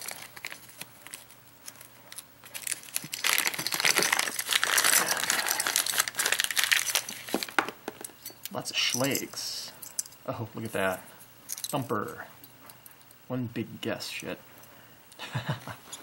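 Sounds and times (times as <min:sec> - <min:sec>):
packaging crinkling and rustling: 0:00.0 - 0:08.1.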